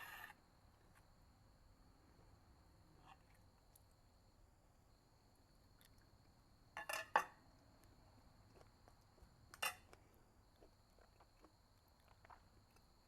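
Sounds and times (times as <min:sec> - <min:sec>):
cutlery clinking on plate: 0:06.8 - 0:07.4.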